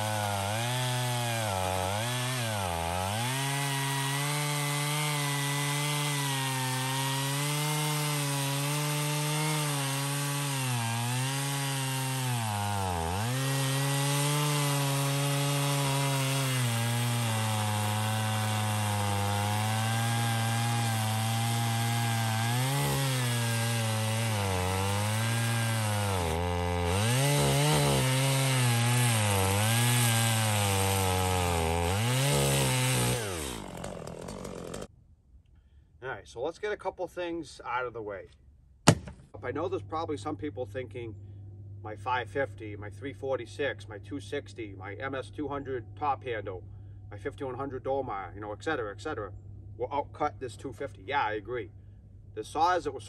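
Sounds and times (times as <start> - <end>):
chainsaw cutting wood: 0.0 - 34.9, 38.9 - 39.3.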